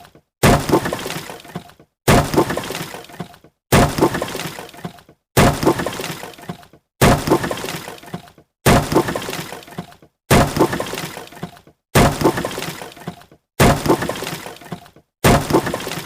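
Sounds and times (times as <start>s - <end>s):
wood cracking and splintering: 0.0s - 16.0s.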